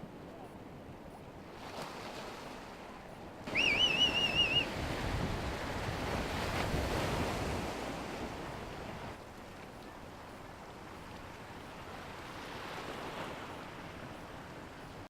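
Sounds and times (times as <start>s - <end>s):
shrill whistle: 3.5s - 4.7s
wind buffeting microphone: 3.5s - 9.2s.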